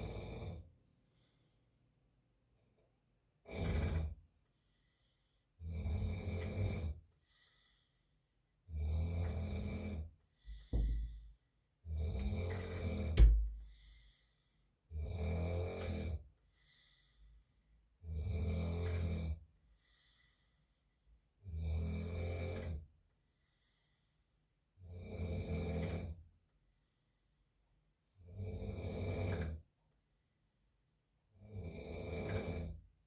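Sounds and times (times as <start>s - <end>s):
man snoring: 3.5s - 4.2s, 5.6s - 7.0s, 8.7s - 10.0s, 18.1s - 19.4s, 31.4s - 32.8s
short snort: 3.5s - 4.2s.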